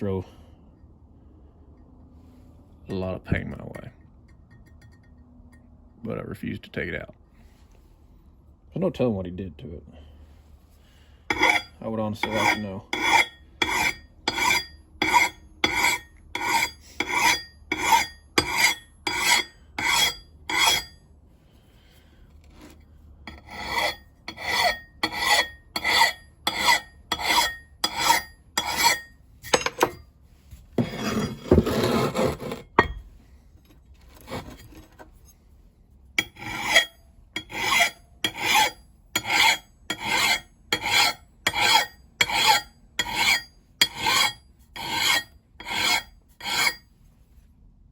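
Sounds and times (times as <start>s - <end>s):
file rasping on axe edge: 11.3s - 21.0s, 22.6s - 29.7s, 30.8s - 33.0s, 36.2s - 46.9s
scraping rustle: 22.3s - 22.9s, 33.6s - 35.5s.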